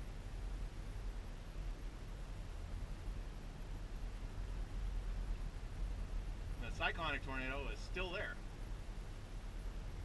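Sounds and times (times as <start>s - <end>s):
faint hiss: 0.0s - 10.0s.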